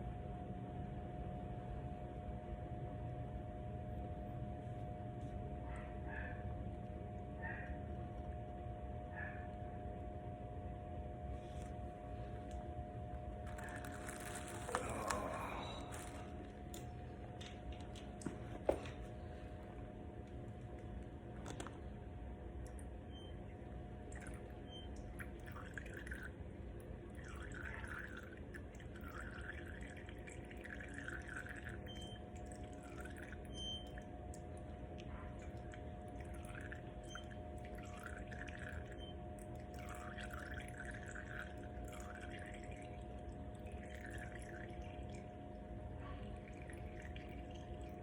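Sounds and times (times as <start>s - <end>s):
steady background hum: 0.0s - 48.0s
oil dripping into container: 11.5s - 48.0s.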